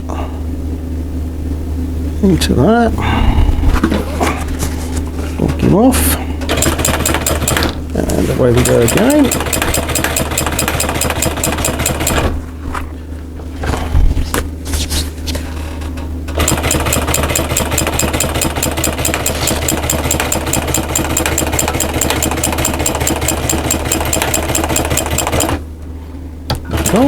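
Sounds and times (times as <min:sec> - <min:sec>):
sewing machine clicks: 0:06.5 - 0:07.7, 0:08.6 - 0:12.3, 0:16.3 - 0:25.6, 0:26.6 - 0:27.0
sewing machine running: 0:06.5 - 0:07.7, 0:08.4 - 0:12.3, 0:16.3 - 0:25.6, 0:26.7 - 0:27.0.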